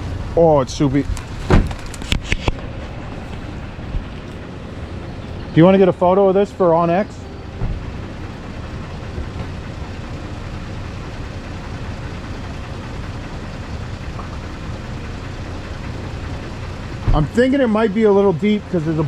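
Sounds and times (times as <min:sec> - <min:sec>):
engine idling: 0:00.0 - 0:19.0.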